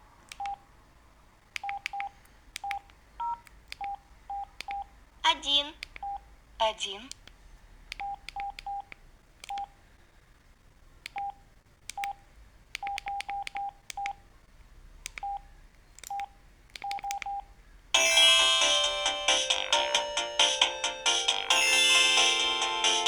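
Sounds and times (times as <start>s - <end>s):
keypad beeps: 0.3s - 0.6s, 1.6s - 4.9s, 6.0s - 6.2s, 7.9s - 9.8s, 11.1s - 12.2s, 12.8s - 14.2s, 15.1s - 17.5s
polyphonic ringtone melody: 18.0s - 23.0s.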